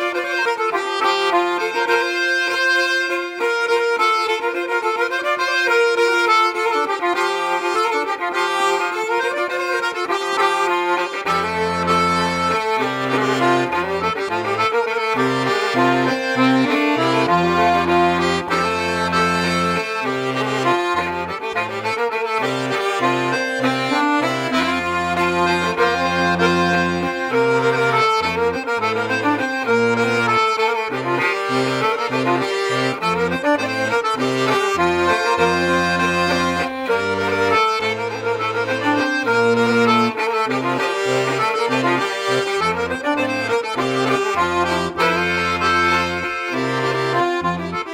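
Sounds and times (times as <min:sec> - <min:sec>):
accordion bass notes: 0:00.0 - 0:47.9
accordion folk melody: 0:00.0 - 0:47.9.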